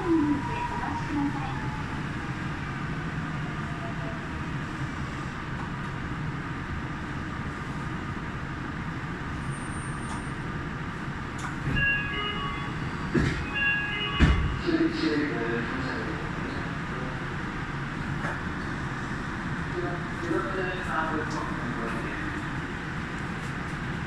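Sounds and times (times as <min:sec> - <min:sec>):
monorail train rumble and rush: 0:00.0 - 0:24.0.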